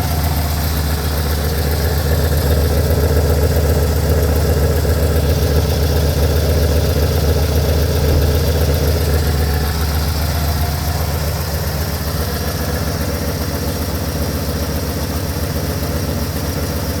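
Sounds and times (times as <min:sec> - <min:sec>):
truck engine idling: 0:00.0 - 0:17.0.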